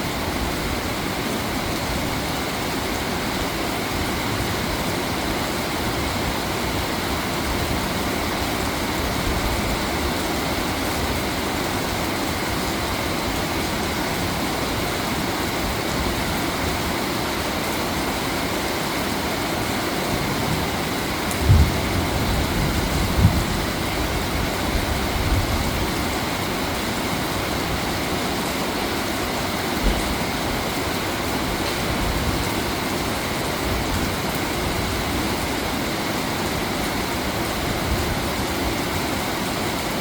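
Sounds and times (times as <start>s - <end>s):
short low thump: 29.8s - 30.2s.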